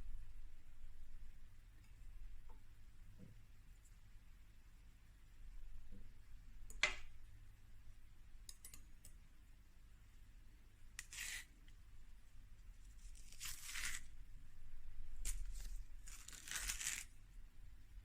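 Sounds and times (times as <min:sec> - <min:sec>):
banana peel tearing: 0:11.0 - 0:11.5, 0:13.0 - 0:14.1, 0:15.2 - 0:17.1.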